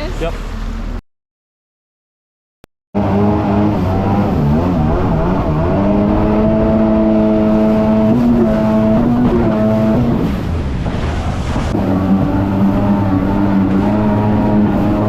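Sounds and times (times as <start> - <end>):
jet ski engine running: 3.0 - 15.0.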